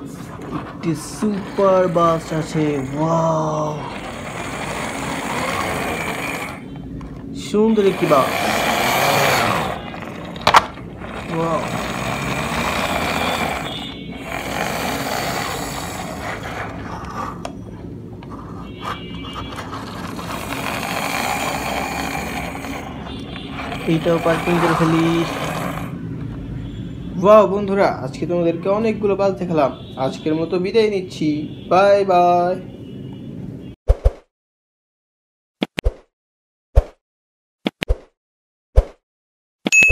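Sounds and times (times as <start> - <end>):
toy wheels rattling whir: 0.5 - 6.7, 7.8 - 17.5, 18.3 - 25.9.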